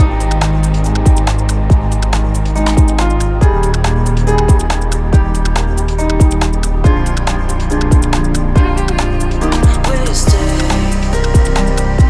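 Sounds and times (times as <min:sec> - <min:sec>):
deep kick drum hits: 0:00.0 - 0:00.4, 0:01.0 - 0:07.2, 0:07.9 - 0:08.9, 0:09.6 - 0:10.7, 0:11.3 - 0:11.7
fast hi-hat ticks: 0:00.0 - 0:12.0
held synth chords: 0:00.0 - 0:12.0.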